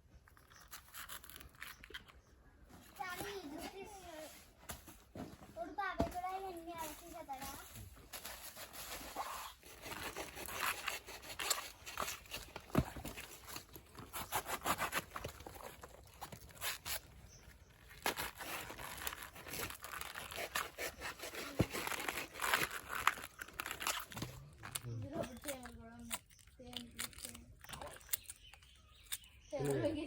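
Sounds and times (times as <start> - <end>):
banana flower being torn: 0.2 - 2.3, 8.9 - 29.8.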